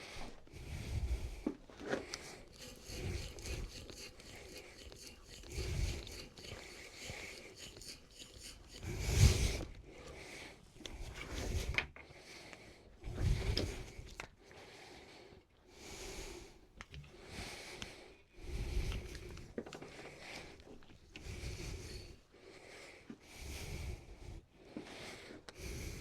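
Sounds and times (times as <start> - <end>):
hand tool rubbing on wood: 1.8 - 9.8, 21.3 - 22.2.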